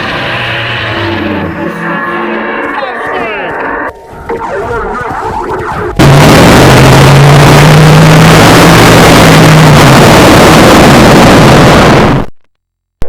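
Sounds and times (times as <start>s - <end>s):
loud harsh noise: 5.9s - 12.3s.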